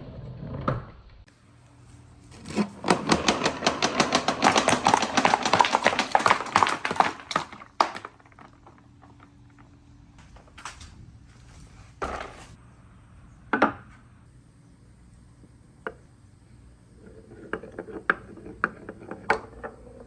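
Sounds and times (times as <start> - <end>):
marbles rattling on wooden run: 2.4 - 9.5.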